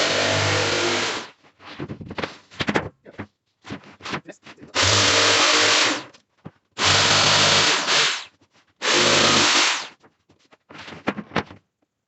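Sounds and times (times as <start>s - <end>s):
power tool running: 0.0s - 1.3s, 4.8s - 6.1s, 6.8s - 9.9s.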